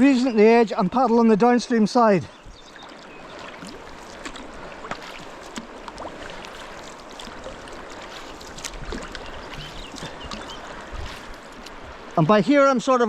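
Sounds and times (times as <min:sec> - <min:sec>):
kayak paddle splashing: 0:00.0 - 0:13.0
river current rushing and gurgling: 0:00.0 - 0:13.0
water dripping: 0:02.6 - 0:12.5.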